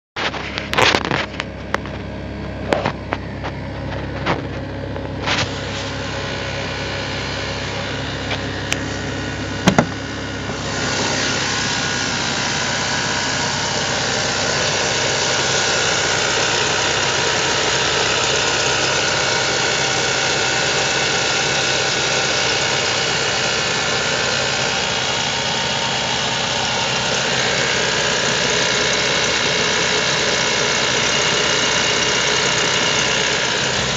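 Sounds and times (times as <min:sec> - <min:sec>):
car engine idling: 0:00.2 - 0:33.9.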